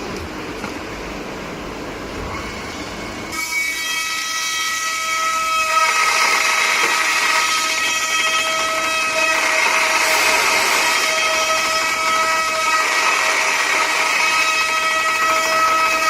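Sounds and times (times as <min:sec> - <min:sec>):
high ringing squeal: 0:02.4 - 0:16.0
metal cutting machine running: 0:03.6 - 0:16.0.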